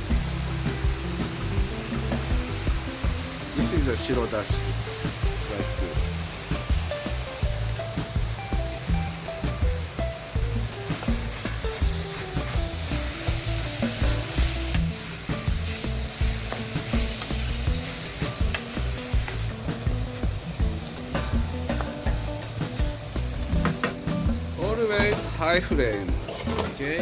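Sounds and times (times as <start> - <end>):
food sizzling in a frying pan: 0.0 - 27.0
utensil clicking against pan: 16.1 - 19.9.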